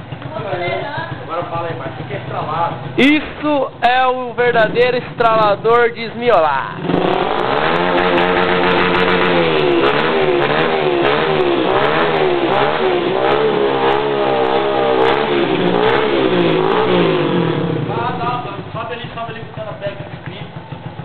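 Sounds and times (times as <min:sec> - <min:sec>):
motorcycle engine revving: 0:00.0 - 0:21.0
exhaust crackling pops: 0:02.4 - 0:05.7, 0:06.7 - 0:21.0.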